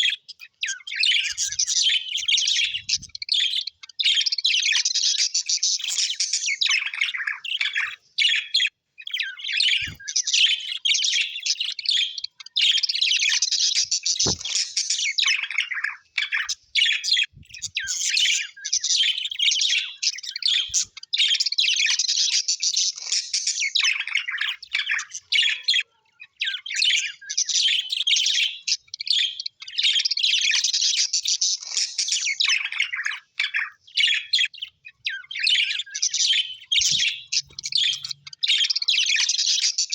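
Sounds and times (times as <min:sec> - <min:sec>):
parrots chattering and chirping: 0:00.0 - 0:39.9
faint knock: 0:14.3 - 0:14.5.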